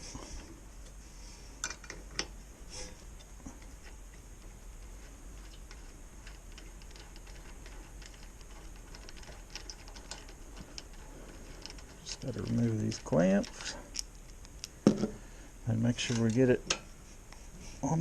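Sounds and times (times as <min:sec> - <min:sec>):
clicks of parts and tools handled: 0:01.6 - 0:04.2, 0:05.4 - 0:15.2, 0:16.0 - 0:16.9.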